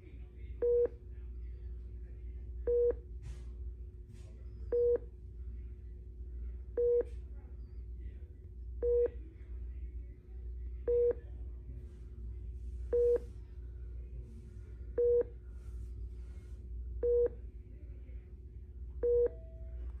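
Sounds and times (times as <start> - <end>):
steady low hum: 0.0 - 20.0
patient monitor beeping: 0.6 - 1.1, 2.6 - 3.1, 4.7 - 5.2, 6.7 - 7.2, 8.8 - 9.3, 10.8 - 11.3, 12.9 - 13.4, 14.9 - 15.4, 17.0 - 17.4, 18.9 - 20.0.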